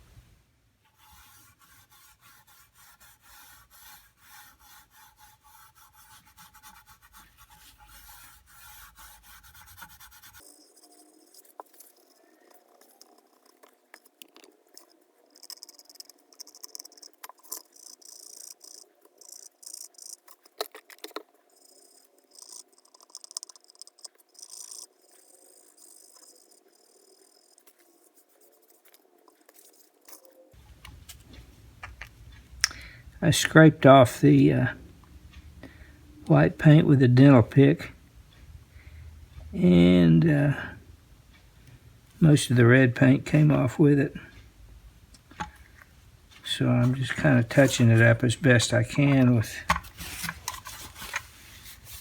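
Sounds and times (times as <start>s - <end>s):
scraping and rubbing on metal sockets: 0.9s - 31.2s, 46.4s - 52.0s.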